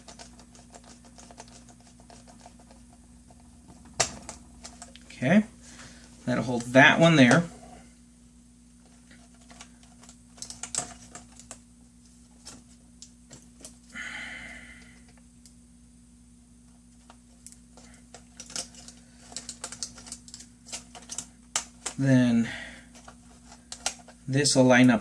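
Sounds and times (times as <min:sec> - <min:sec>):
plastic parts clicking: 0:17.4 - 0:22.0.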